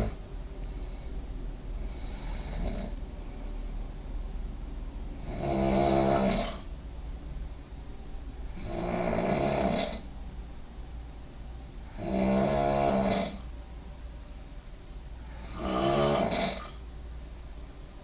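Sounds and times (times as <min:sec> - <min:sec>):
person snoring heavily: 0:01.8 - 0:03.6, 0:05.2 - 0:06.7, 0:08.6 - 0:10.1, 0:11.9 - 0:13.5, 0:15.3 - 0:16.8.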